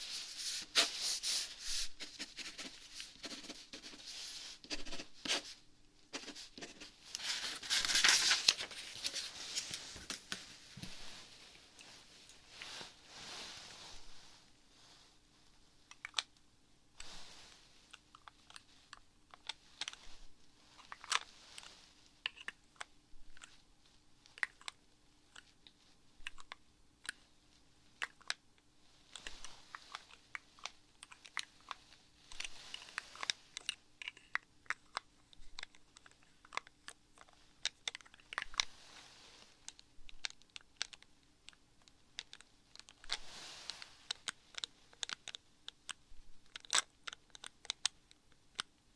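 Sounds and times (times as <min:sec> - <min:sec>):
crinkling rustles: 0:06.2 - 0:13.9.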